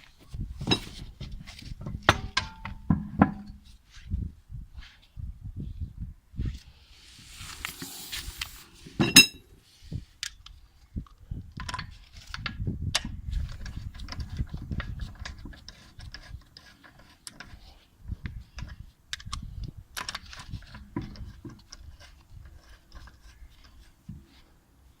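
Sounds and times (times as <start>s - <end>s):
metal tools clinking: 9.0s - 9.4s.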